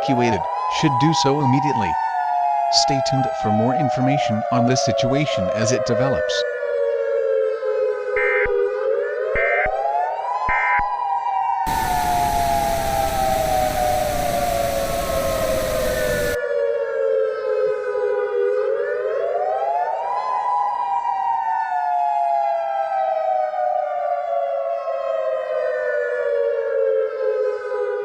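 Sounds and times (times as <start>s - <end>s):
warning siren wailing: 0.0s - 28.0s
static hiss: 11.7s - 16.4s.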